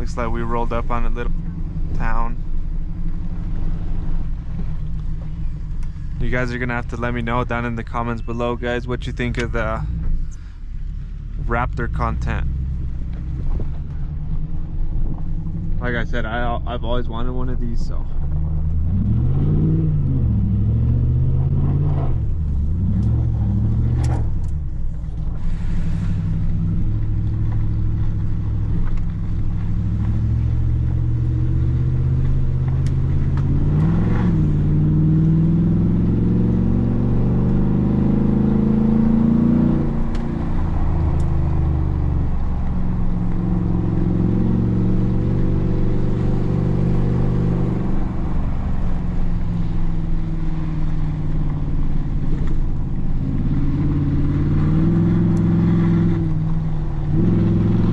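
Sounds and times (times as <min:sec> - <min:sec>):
truck engine revving: 0:00.0 - 0:02.4, 0:15.8 - 0:57.9.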